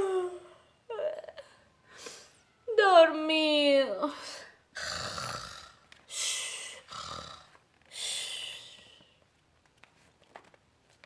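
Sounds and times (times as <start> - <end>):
woman imitating snoring: 4.8 - 5.8, 6.8 - 7.5.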